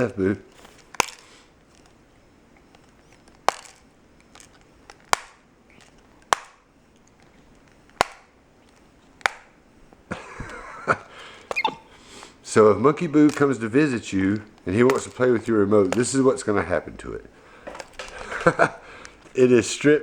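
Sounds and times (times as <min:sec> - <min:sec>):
sharp plastic clacks: 0:00.0 - 0:12.4, 0:13.0 - 0:19.4
rustling: 0:00.0 - 0:12.5.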